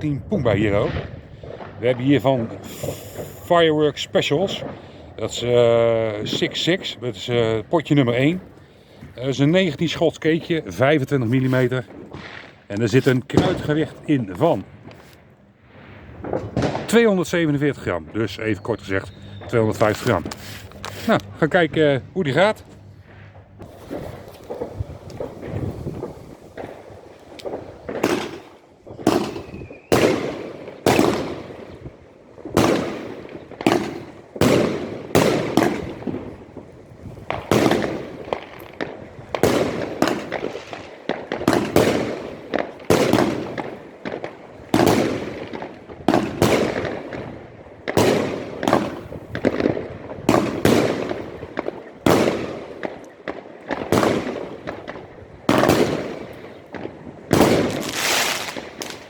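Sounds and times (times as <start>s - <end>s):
fireworks bangs: 0.0s - 59.0s.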